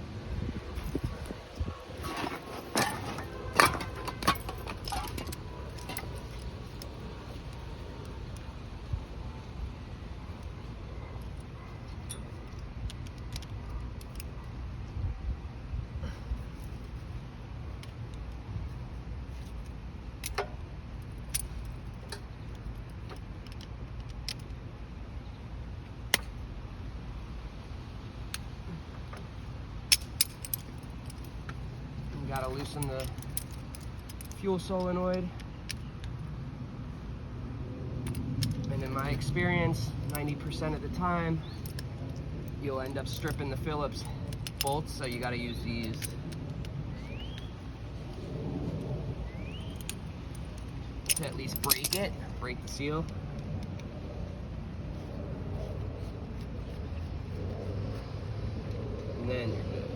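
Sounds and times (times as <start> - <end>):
low background rumble: 0.0 - 59.9
steady low hum: 0.0 - 59.9
metal tools clinking and rattling: 2.0 - 8.5, 10.3 - 14.3, 29.9 - 35.9, 38.1 - 47.1, 49.5 - 53.1.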